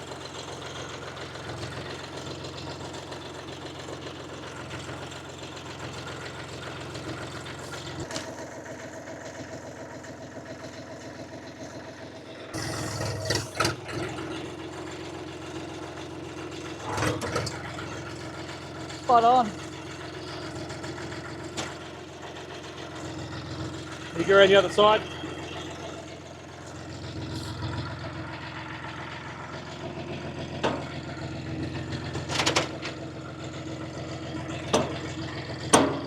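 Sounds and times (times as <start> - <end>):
diesel tractor engine idling: 0.0 - 36.0
sharp engine knocks: 30.6 - 31.0, 32.2 - 33.0, 34.7 - 35.1, 35.7 - 36.0.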